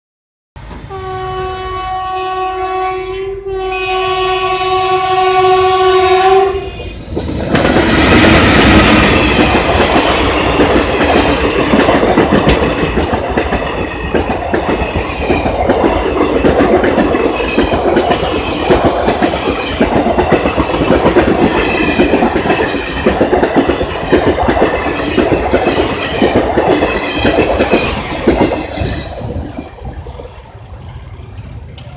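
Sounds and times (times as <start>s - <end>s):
train horn blast: 0.9s - 7.0s
train wheels clickety-clack: 6.3s - 31.9s.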